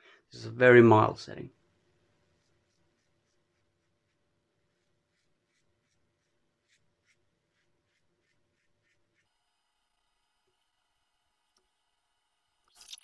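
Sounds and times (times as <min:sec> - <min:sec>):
faint scratchy strokes: 0:02.2 - 0:09.8.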